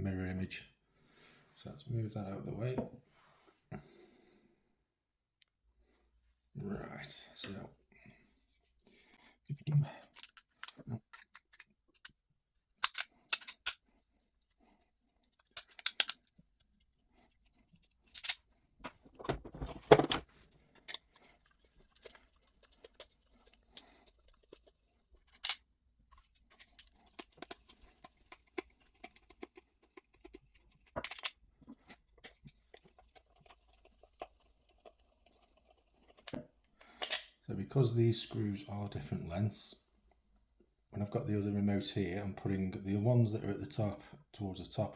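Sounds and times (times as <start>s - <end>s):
plastic parts clicking: 10.1s - 13.8s, 15.2s - 16.7s, 18.0s - 31.4s.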